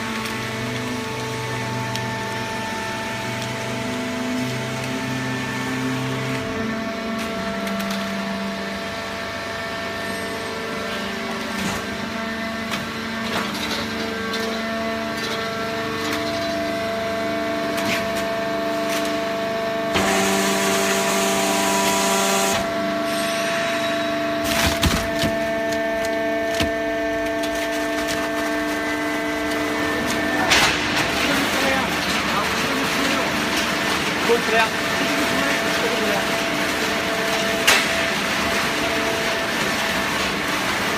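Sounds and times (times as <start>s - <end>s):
baler motor hum and whine: 0.0s - 40.9s
cardboard cracking and crunching: 24.4s - 33.2s.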